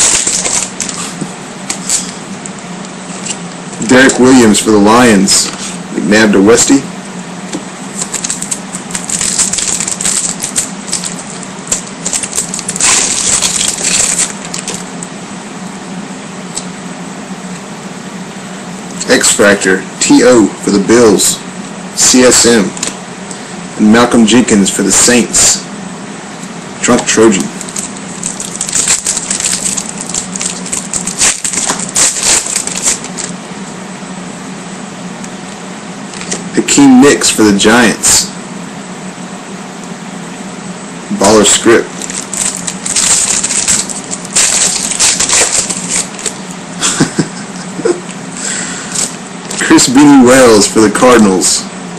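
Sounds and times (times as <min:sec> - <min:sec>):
foil wrapper crinkling and tearing: 0:00.0 - 0:02.2, 0:08.0 - 0:14.9, 0:27.3 - 0:33.3, 0:41.2 - 0:47.2, 0:48.4 - 0:49.6.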